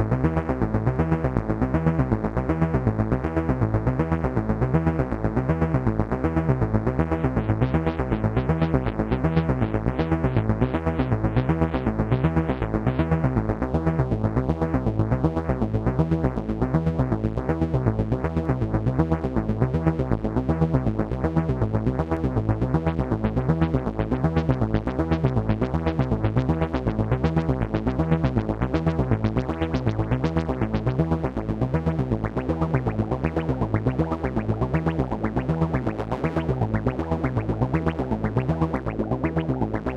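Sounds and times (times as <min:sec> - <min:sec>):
synthesizer pulsing pattern: 0:28.8 - 0:39.9.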